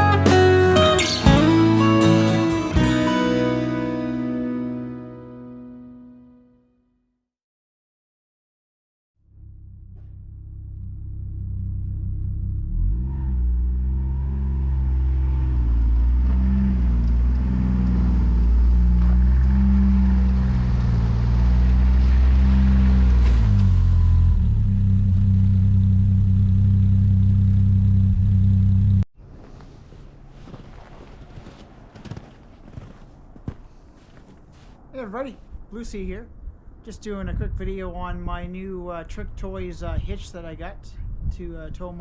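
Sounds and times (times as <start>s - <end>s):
keyboard music: 0.0s - 6.6s.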